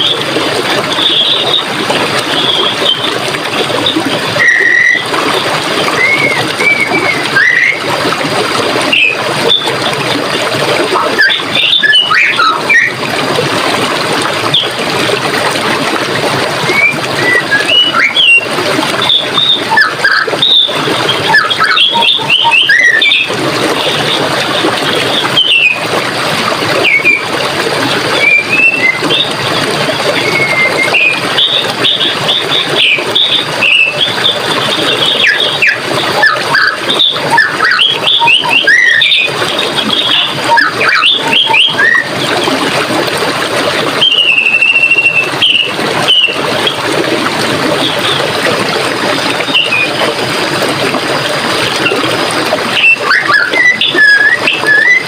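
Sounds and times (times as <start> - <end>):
running water: 0.0 - 55.0.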